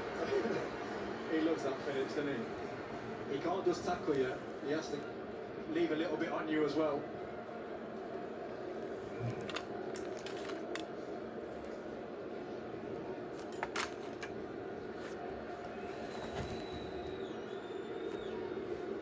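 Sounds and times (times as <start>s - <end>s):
stadium crowd murmur: 0.0s - 10.1s.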